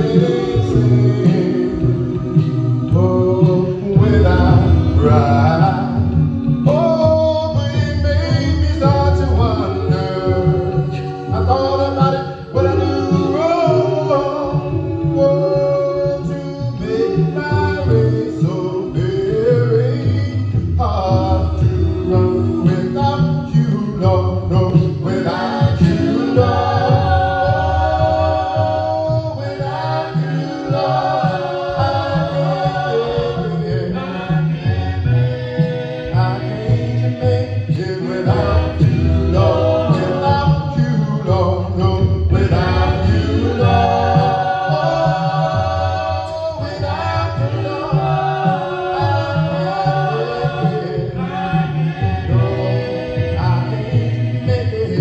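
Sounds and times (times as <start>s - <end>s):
gospel music with singing: 0.0s - 55.0s.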